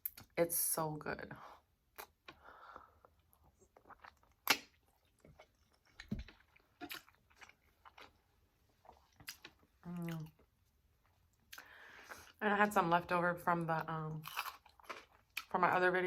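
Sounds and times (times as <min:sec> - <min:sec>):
person chewing wetly: 0:01.9 - 0:12.4, 0:14.2 - 0:15.5.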